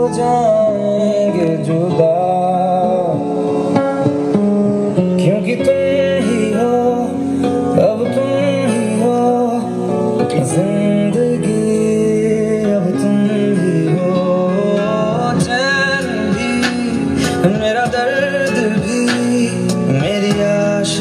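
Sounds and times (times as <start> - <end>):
song with singing and guitar: 0.0 - 21.0.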